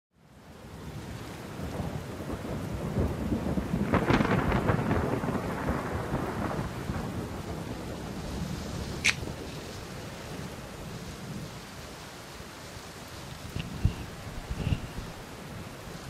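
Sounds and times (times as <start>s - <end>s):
steady rain: 0.1s - 16.0s
thunder: 1.5s - 9.6s.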